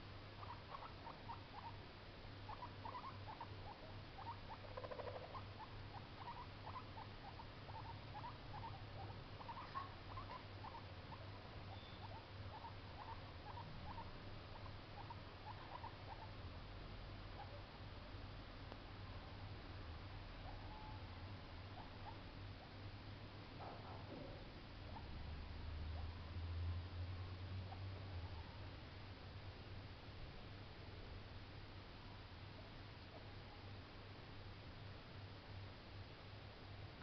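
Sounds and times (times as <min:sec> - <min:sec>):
low buzzy guinea pig call: 0:00.0 - 0:17.9, 0:19.4 - 0:22.9, 0:23.5 - 0:26.4, 0:27.5 - 0:28.8
guinea pig squeaking: 0:00.4 - 0:01.8, 0:02.4 - 0:16.4, 0:17.3 - 0:17.6, 0:20.4 - 0:21.1, 0:21.7 - 0:22.3.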